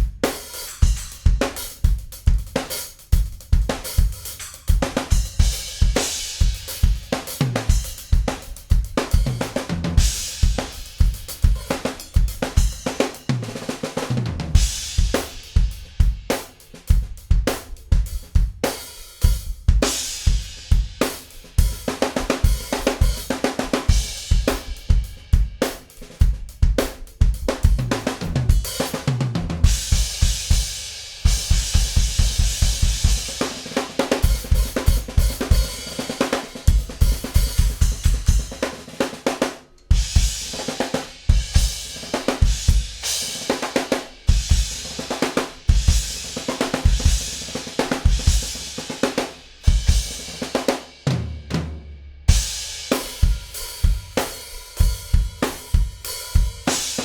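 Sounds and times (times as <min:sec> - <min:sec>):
drum fills: 0:00.0 - 0:57.0
snare drum: 0:00.0 - 0:57.0
cymbals: 0:29.6 - 0:38.9, 0:39.9 - 0:51.0, 0:52.3 - 0:57.0.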